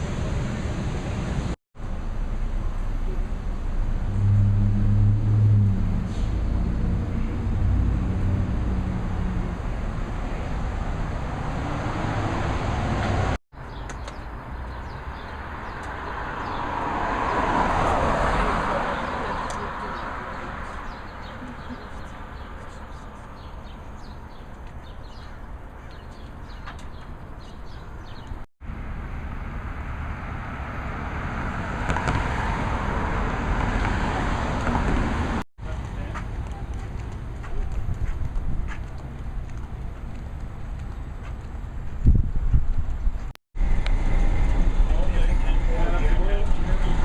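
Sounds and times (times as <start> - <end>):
outdoor background noise: 0.0 - 47.0
vehicle passing by: 2.7 - 13.4, 15.2 - 22.8, 28.6 - 38.1, 43.2 - 47.0.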